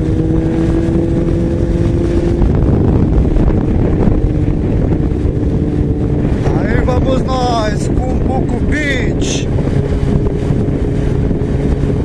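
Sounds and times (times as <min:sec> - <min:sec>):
motorcycle engine running: 0:00.0 - 0:12.0
wind noise on microphone: 0:00.0 - 0:12.0.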